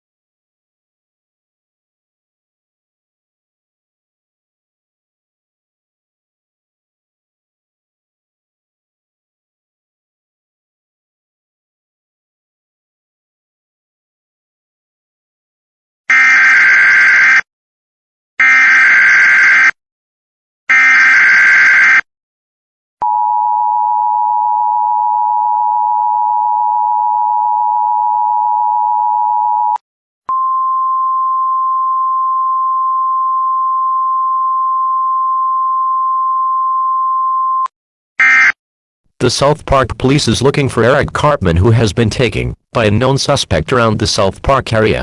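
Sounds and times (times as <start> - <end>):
two-tone attention signal: 38.2 - 38.6.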